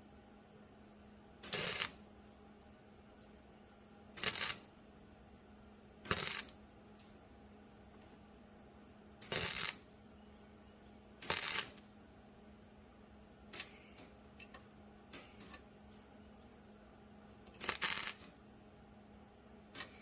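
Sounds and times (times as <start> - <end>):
faint steady hum: 0.0 - 20.0
welding bursts: 1.4 - 2.0, 4.2 - 4.7, 6.0 - 6.6, 9.2 - 9.9, 11.2 - 11.9, 13.5 - 15.6, 17.5 - 18.4, 19.7 - 20.0.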